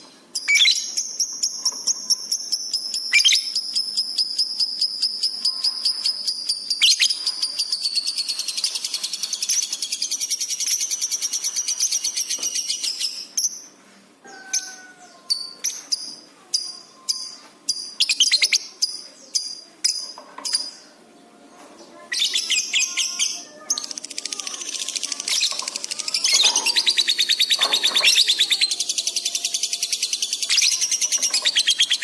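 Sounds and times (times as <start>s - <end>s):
bird chirps: 0.4s - 13.7s, 21.9s - 32.0s
bird chattering trill: 22.1s - 32.0s.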